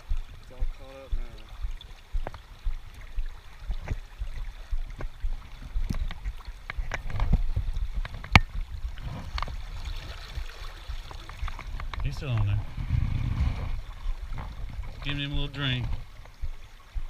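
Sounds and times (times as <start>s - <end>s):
creek water splashing: 0.0s - 17.0s
sharp clicks and knocks: 8.0s - 8.5s.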